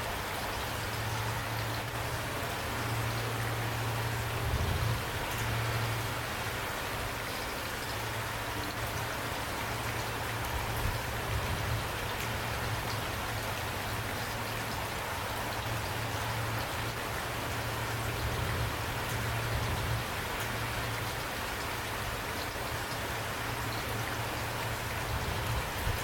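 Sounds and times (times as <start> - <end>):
raindrops ticking on a surface: 0.0 - 26.0
steady rain falling: 0.0 - 26.0.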